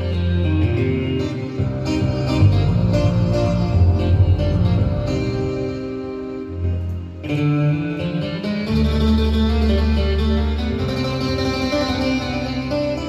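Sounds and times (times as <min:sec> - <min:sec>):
held bass notes: 0:00.0 - 0:13.0
keyboard plucked-string melody: 0:00.0 - 0:13.0.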